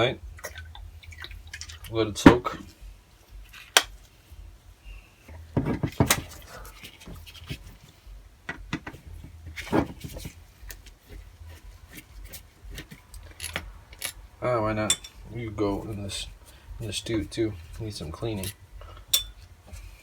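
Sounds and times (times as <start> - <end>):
low steady hum: 0.0 - 20.0
small metal parts clicking: 12.8 - 14.3.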